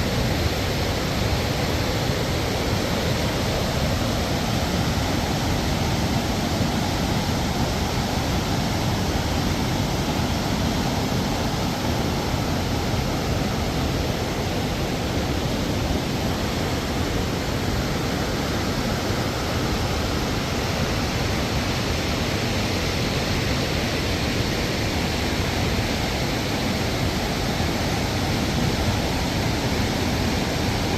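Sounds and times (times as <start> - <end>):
river rapids roaring: 0.0 - 30.9.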